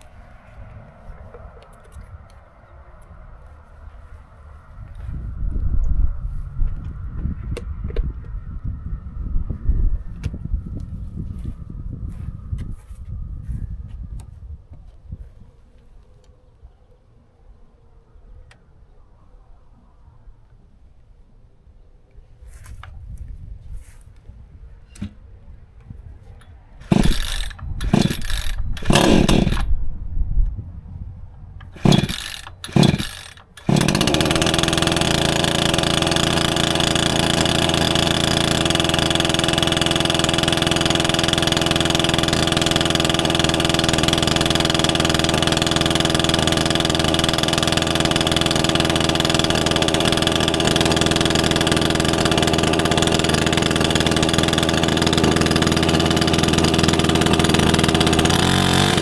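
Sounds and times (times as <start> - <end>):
chainsaw being pull-started: 26.8 - 29.7, 31.6 - 59.0
chainsaw running loudly: 26.8 - 29.7, 31.7 - 59.0.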